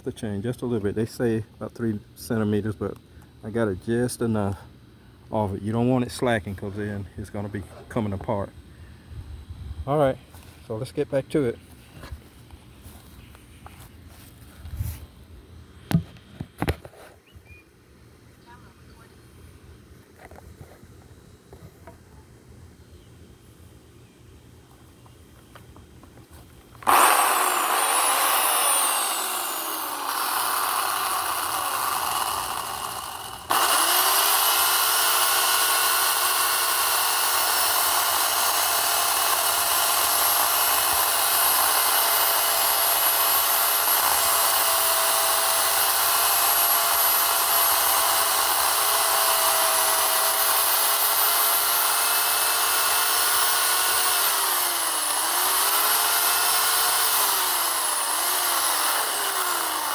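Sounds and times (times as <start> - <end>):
electric chainsaw cutting wood: 26.8 - 59.9.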